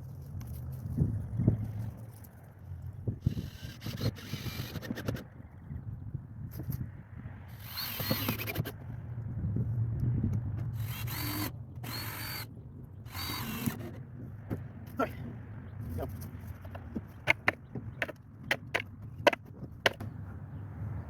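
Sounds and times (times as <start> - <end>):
power drill motor whining: 3.2 - 5.4, 7.5 - 8.8, 10.8 - 12.5, 13.1 - 14.0.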